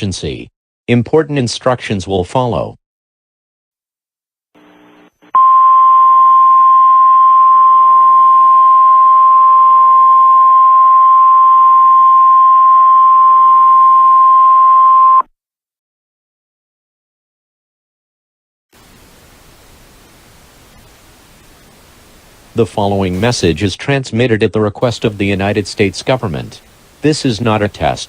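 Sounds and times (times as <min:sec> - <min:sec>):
brief burst of static: 0:18.8 - 0:23.6.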